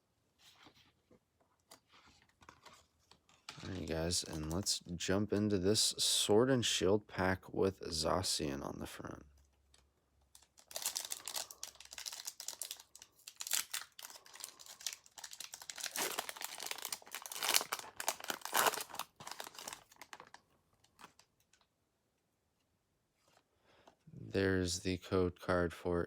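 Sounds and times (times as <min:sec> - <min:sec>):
foil wrapper crinkling: 0:10.3 - 0:21.6.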